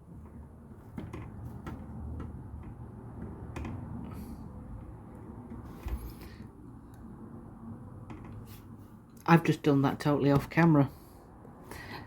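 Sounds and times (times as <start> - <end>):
handling noise: 0.0 - 6.5.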